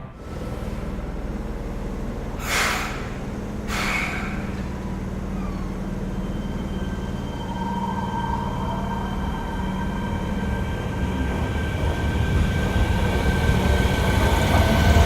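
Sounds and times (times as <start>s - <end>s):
train low hum: 0.0s - 15.0s
air hissing: 2.4s - 4.6s.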